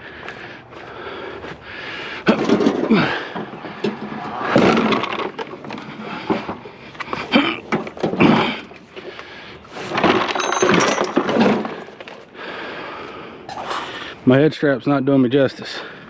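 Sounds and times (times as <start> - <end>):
metal knocks and scraping: 10.2 - 11.7.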